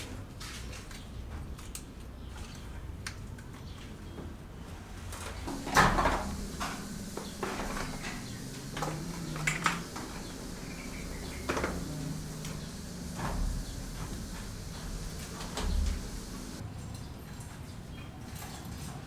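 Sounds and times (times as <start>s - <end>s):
faint low hum: 5.5s - 16.6s.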